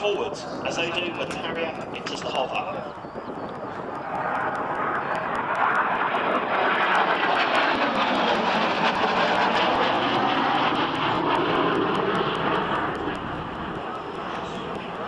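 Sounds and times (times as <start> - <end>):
loud jet engine noise: 0.0 - 15.0.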